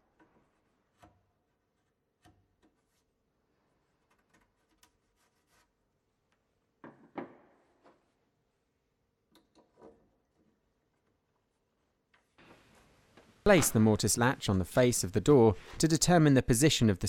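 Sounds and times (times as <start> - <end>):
chisel scraping and tapping wood: 0.2 - 3.0.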